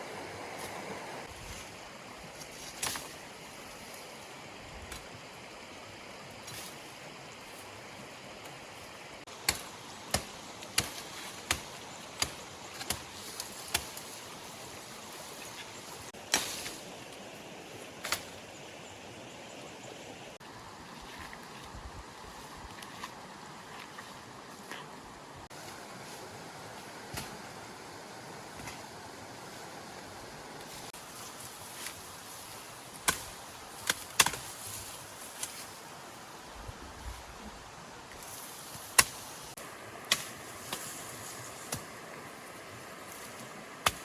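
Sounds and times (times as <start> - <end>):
stream running: 0.0 - 33.8.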